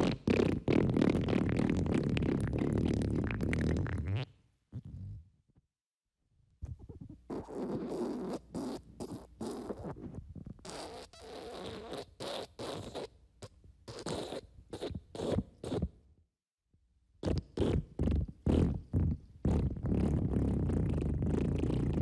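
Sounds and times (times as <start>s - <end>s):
wet farts: 0.0s - 5.3s, 6.7s - 13.1s, 17.2s - 22.0s.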